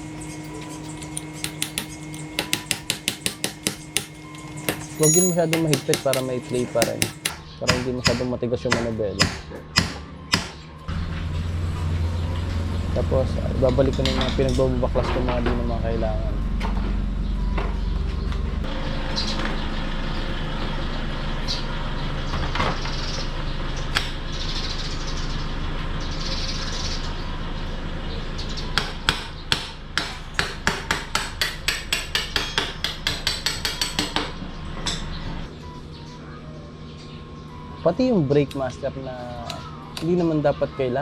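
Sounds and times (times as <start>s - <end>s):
hand tools knocking metal: 0.4s - 9.4s.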